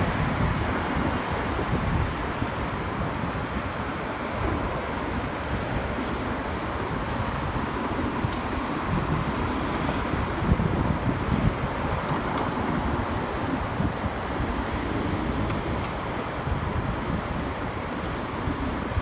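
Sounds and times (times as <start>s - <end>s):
road and traffic noise: 0.0s - 19.0s
wind rushing over microphone: 0.0s - 19.0s.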